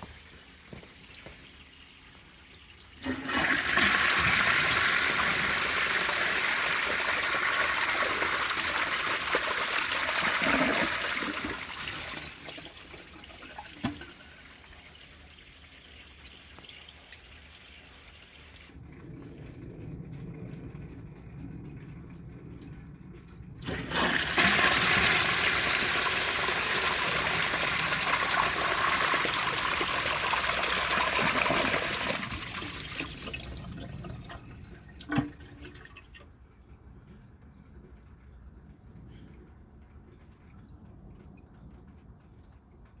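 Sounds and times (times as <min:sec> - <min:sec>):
toilet flushing: 0:02.4 - 0:18.7, 0:23.6 - 0:36.2.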